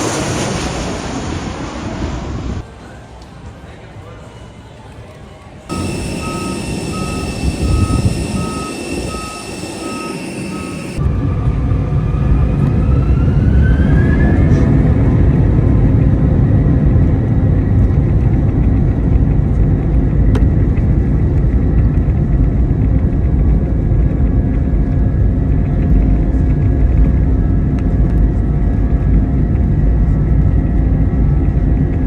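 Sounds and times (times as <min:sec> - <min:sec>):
jet engine whine rising: 0:00.0 - 0:02.6, 0:05.7 - 0:32.0
jet engines rumbling: 0:00.0 - 0:02.7, 0:05.7 - 0:32.0
regular beeping: 0:05.7 - 0:11.0.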